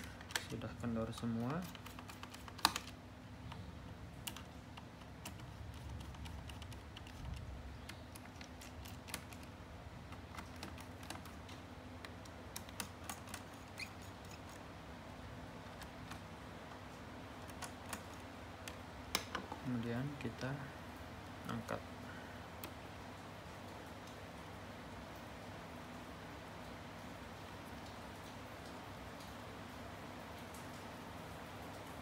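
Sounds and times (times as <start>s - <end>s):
screwdriver clicking on screws: 0.0s - 3.0s, 4.2s - 14.7s.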